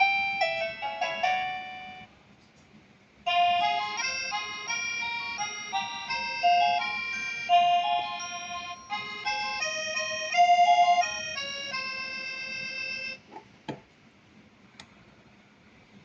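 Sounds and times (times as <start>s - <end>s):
electronic ringtone melody: 0.0s - 2.1s, 3.3s - 13.2s.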